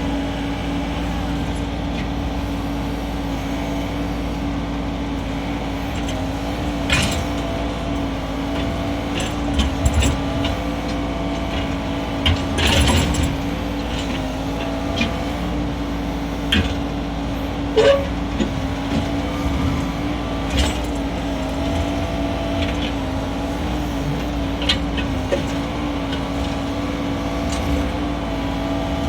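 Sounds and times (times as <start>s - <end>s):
mini excavator engine running: 0.0s - 29.0s
sharp metal knocks and clanks: 17.8s - 18.6s.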